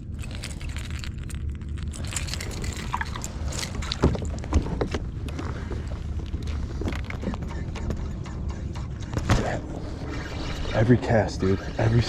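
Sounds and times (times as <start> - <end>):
water splashing and sloshing: 1.8 - 5.0.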